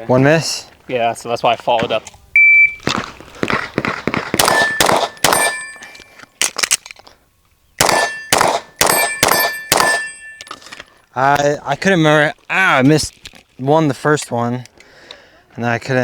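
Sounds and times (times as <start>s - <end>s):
shot timer beep: 2.4s - 2.8s
rapid gunshots: 3.8s - 5.6s, 7.8s - 10.0s
steel targets ringing: 4.4s - 6.2s, 7.8s - 10.6s.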